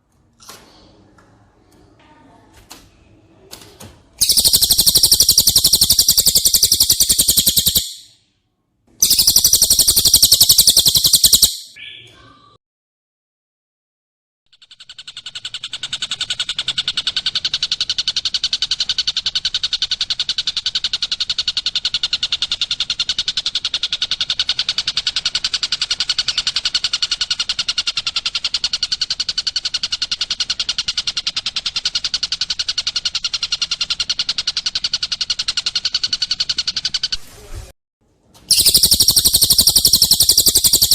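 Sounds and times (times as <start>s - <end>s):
songbird trilling: 4.2s - 8.1s, 9.0s - 12.1s, 38.5s - 40.9s.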